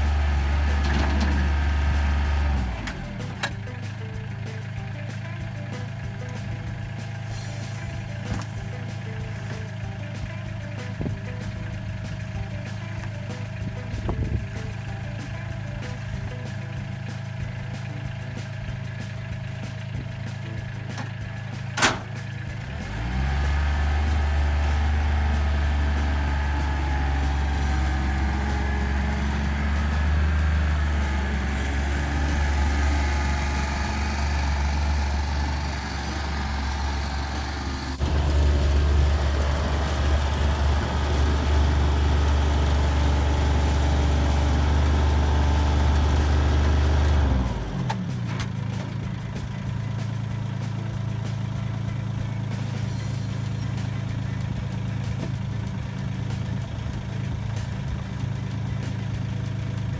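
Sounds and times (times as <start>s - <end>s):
motor humming: 0.0s - 49.5s
sharp click: 21.8s - 22.4s.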